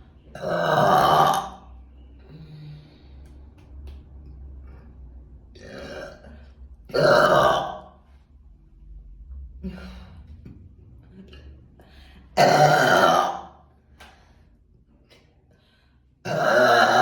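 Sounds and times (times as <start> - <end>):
woman burping: 0.4 - 1.6, 5.6 - 7.9, 12.4 - 13.6, 16.2 - 17.0.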